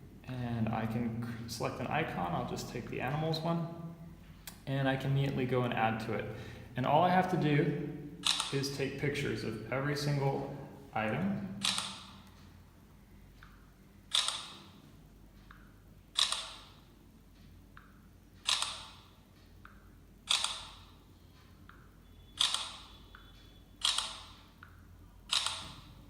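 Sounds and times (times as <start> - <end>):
phone camera shutter: 8.2 - 8.6, 11.6 - 12.2, 14.1 - 14.7, 16.2 - 16.7, 18.5 - 19.0, 20.3 - 20.8, 22.3 - 23.0, 23.8 - 24.4, 25.3 - 25.9.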